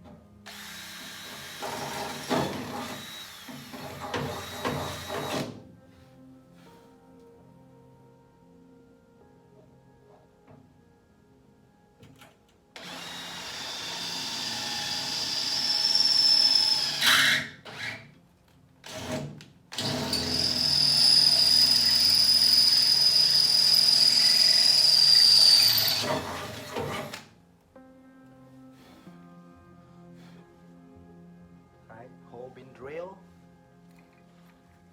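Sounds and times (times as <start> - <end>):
power drill motor whine: 0.5 - 5.5, 12.8 - 17.4, 19.8 - 27.2.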